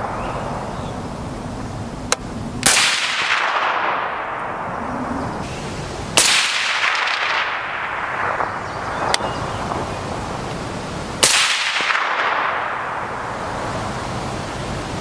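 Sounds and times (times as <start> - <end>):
suppressed rifle shots: 2.1 - 5.2, 6.2 - 10.0, 11.2 - 13.2.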